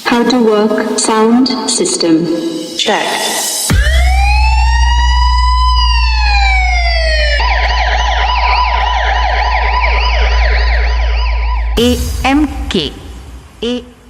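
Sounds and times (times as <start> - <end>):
police siren effect: 3.7 - 12.4
deep bass drone: 3.7 - 14.0.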